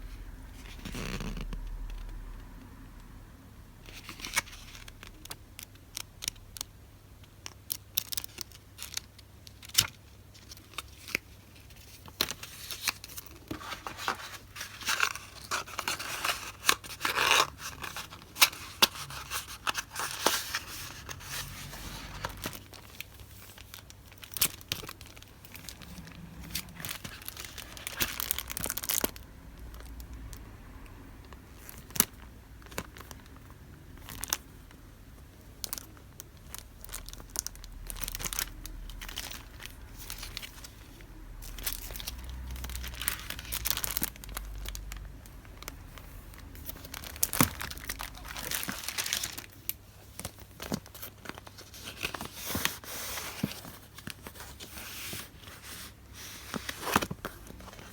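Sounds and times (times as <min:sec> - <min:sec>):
plastic wrapping crinkling: 0:07.4 - 0:30.4, 0:35.6 - 0:57.9.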